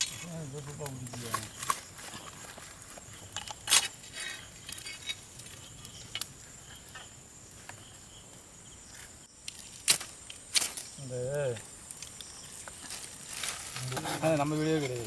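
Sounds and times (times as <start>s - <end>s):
high insect drone: 0.0s - 15.0s.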